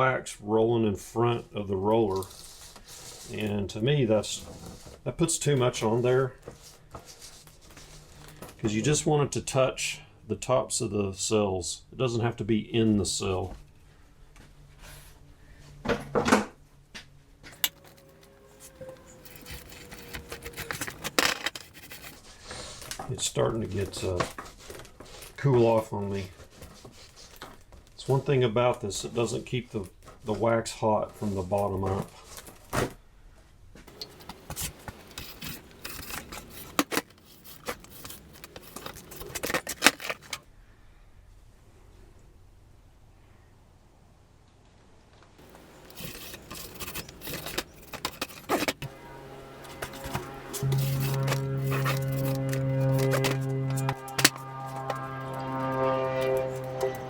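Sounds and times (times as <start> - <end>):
wax roller scraping plastic: 17.6 - 27.5, 33.9 - 40.4, 45.4 - 57.0.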